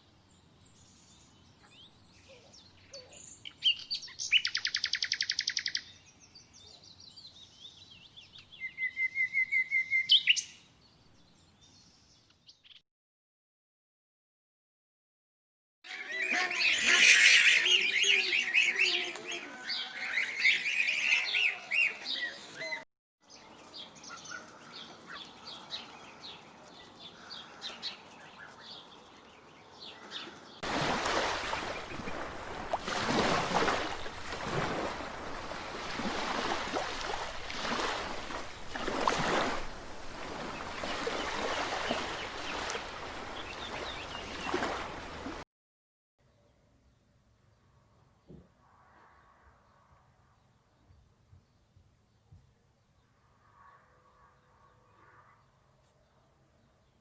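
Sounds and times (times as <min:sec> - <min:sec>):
small birds chirping: 0:00.2 - 0:12.8, 0:15.9 - 0:30.6.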